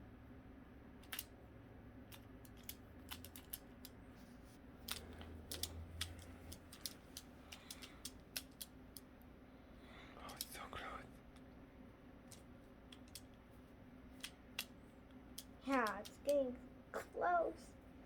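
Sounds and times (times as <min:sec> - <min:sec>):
plastic puzzle clicking: 0:01.0 - 0:01.3, 0:02.1 - 0:04.0, 0:04.8 - 0:09.1, 0:10.2 - 0:10.6, 0:12.3 - 0:13.4, 0:14.2 - 0:14.8, 0:15.4 - 0:16.5.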